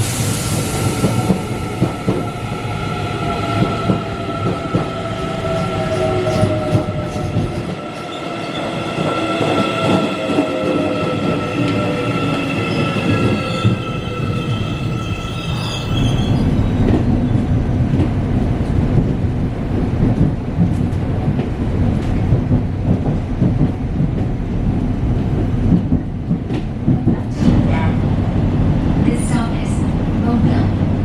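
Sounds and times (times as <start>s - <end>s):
train squeal and falling whine: 0.0s - 17.5s
train low rumble: 0.0s - 31.0s.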